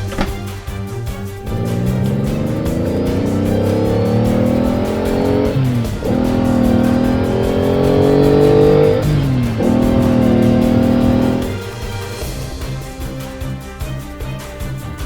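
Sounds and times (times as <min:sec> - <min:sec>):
vehicle engine accelerating: 0:01.4 - 0:13.2.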